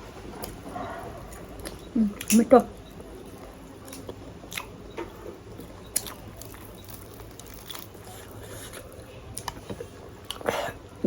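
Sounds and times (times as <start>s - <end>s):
chewing and biting clicks: 3.9s - 10.7s.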